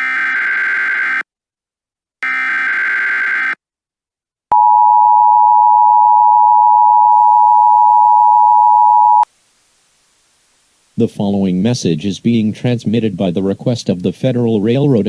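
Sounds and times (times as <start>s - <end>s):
two-tone attention signal: 7.0s - 9.2s.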